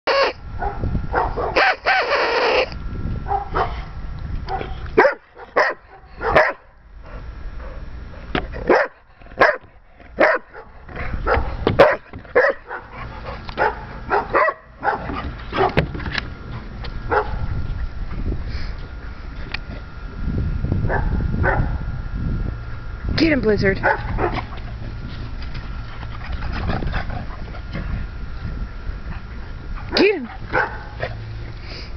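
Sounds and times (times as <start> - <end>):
dog barking: 0.6 - 1.8, 3.3 - 3.8, 4.5 - 6.7, 8.7 - 12.9, 13.6 - 15.8, 17.1 - 17.4, 23.8 - 24.4, 29.9 - 31.0.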